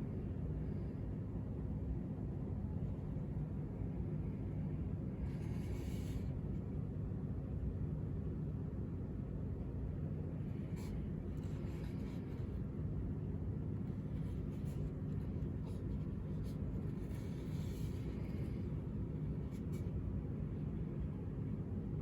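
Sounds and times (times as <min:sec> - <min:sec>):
faint constant tone: 0:00.0 - 0:22.0
low room hum: 0:00.0 - 0:22.0
faint scrapes and clicks on tabletop: 0:05.2 - 0:06.4, 0:10.6 - 0:12.6, 0:13.8 - 0:19.9.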